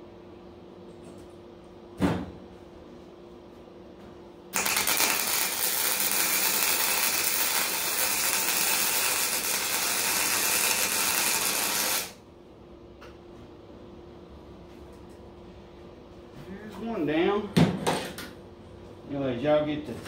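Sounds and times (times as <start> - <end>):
arc welder crackling hiss: 4.5 - 12.2.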